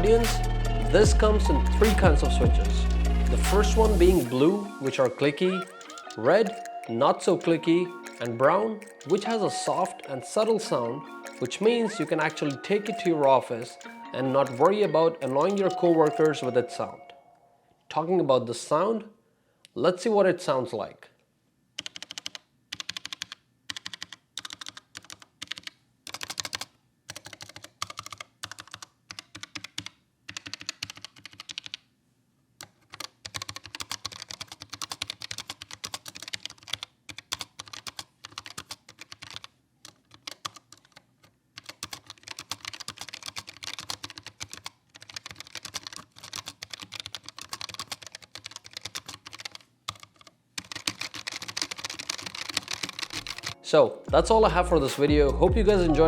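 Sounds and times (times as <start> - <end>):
mechanical keyboard typing: 4.8 - 16.6, 21.8 - 31.8, 32.6 - 53.6.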